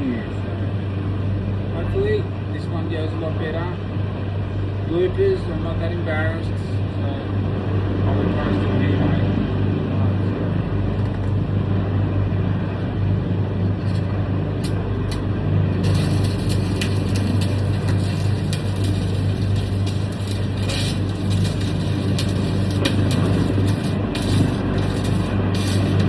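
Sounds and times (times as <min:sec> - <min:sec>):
low electrical hum: 0:00.0 - 0:26.0
arc welder crackling: 0:14.6 - 0:26.0
welding rod sizzling: 0:14.6 - 0:26.0.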